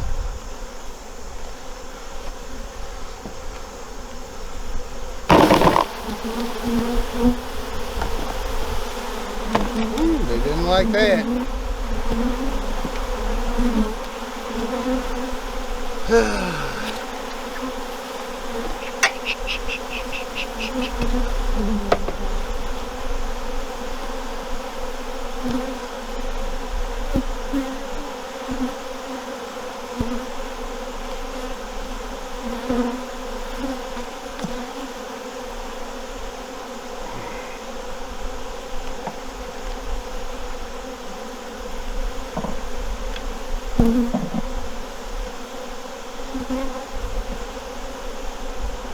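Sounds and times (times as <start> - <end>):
honeybees buzzing: 0.4 - 48.9
bee swooping past microphone: 5.3 - 16.0, 16.8 - 28.9.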